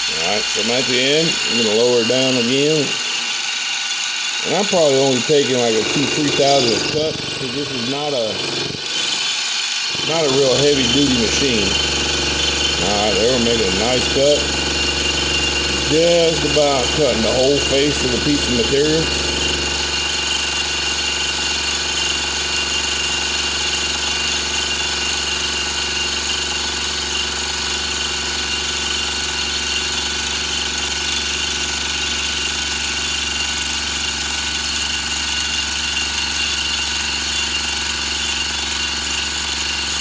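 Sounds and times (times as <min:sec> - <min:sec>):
milling machine cutting metal: 0:00.0 - 0:25.8.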